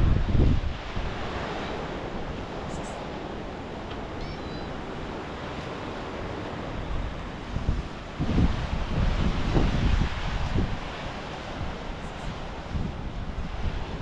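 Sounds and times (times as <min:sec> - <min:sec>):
sea waves: 0:00.0 - 0:14.0
wind: 0:00.0 - 0:14.0
faint short high chirp: 0:04.2 - 0:04.8.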